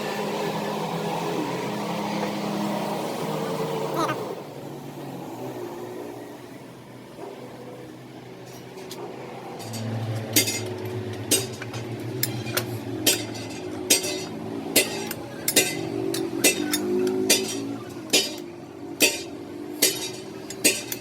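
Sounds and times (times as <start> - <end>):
tools clinking against metal: 8.5 - 21.0.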